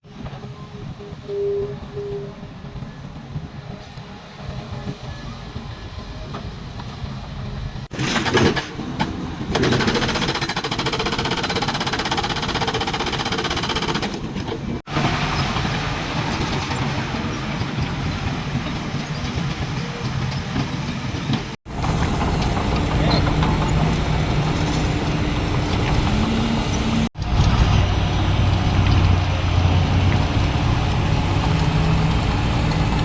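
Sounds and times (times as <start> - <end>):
noisy rattle: 7.9 - 19.6, 21.7 - 33.0
machinery engine drone: 21.7 - 33.0.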